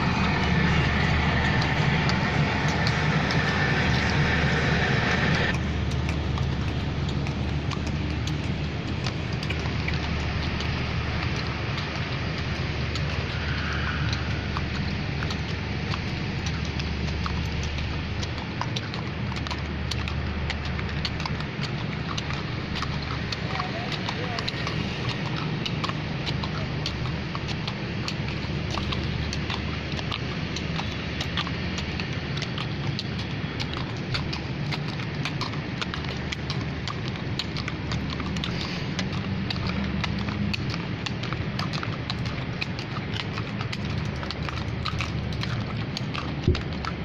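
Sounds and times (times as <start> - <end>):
low rumble: 0.0 - 23.5
horse hooves clip-clopping: 0.0 - 47.0.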